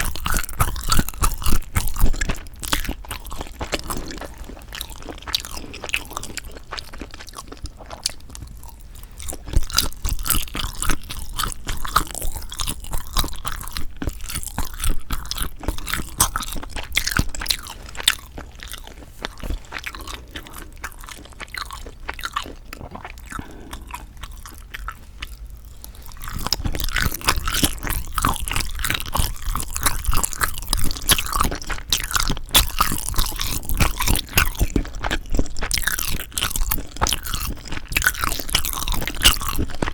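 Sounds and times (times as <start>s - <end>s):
chewing mouth clicks: 0.0s - 39.9s.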